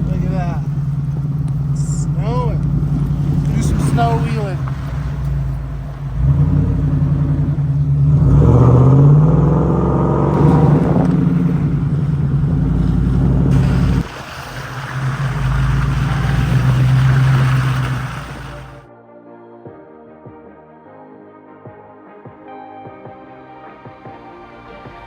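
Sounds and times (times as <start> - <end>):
truck engine running: 0.0 - 18.9.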